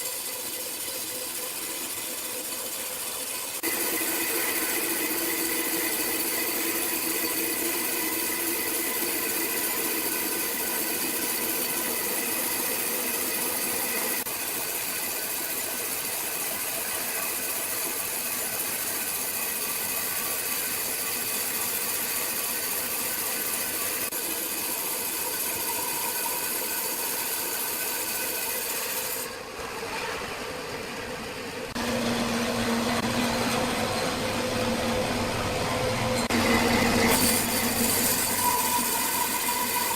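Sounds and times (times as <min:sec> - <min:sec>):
power saw cutting wood: 0:00.0 - 0:39.9
machine hum: 0:29.3 - 0:39.6.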